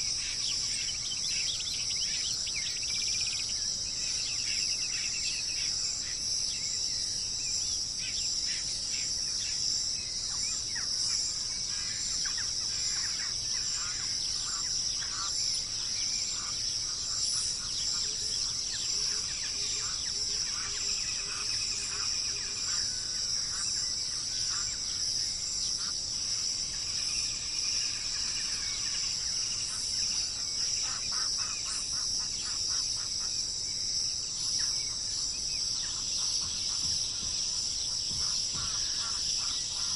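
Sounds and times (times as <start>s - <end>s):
birds chirping and trilling: 0.0s - 39.9s
high drone of insects: 0.0s - 39.9s.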